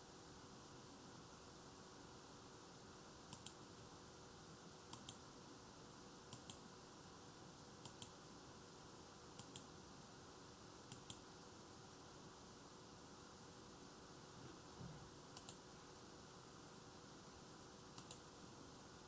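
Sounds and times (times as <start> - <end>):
faint hiss and hum: 0.0 - 19.0
sharp computer control clicks: 3.3 - 3.6, 6.3 - 6.6, 7.8 - 8.2, 9.4 - 9.7, 10.9 - 11.2, 15.4 - 15.6, 18.0 - 18.2.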